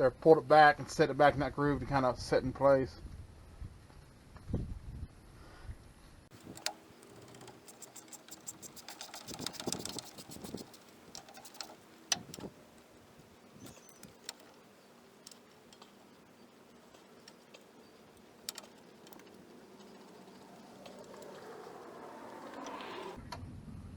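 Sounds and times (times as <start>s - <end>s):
hand tools clicking on metal: 6.3s - 23.2s
quick ticks: 6.3s - 23.2s.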